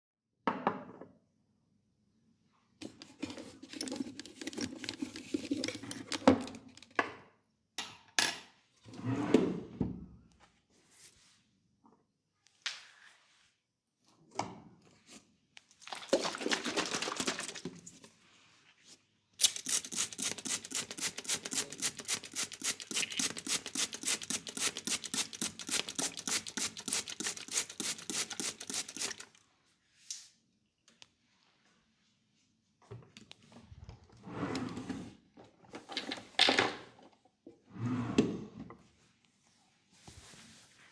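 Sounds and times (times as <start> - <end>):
hands rubbing skin in massage: 19.5 - 29.3.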